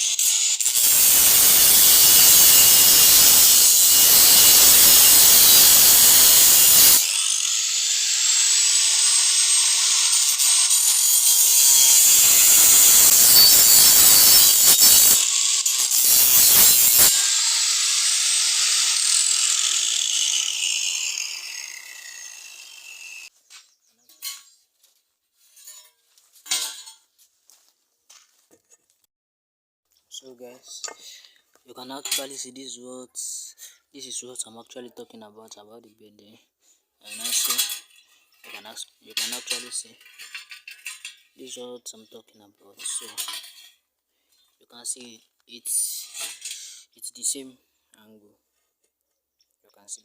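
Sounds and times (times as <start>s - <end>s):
angle grinder cutting metal rod: 0.0s - 23.3s, 37.1s - 41.3s, 42.8s - 43.8s, 46.0s - 46.8s.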